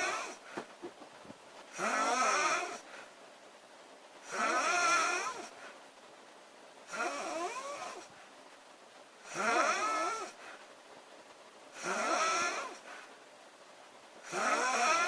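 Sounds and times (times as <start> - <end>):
woman snoring: 1.7 - 2.8, 4.3 - 5.5, 6.9 - 8.1, 9.3 - 10.4, 11.8 - 12.8, 14.3 - 15.0.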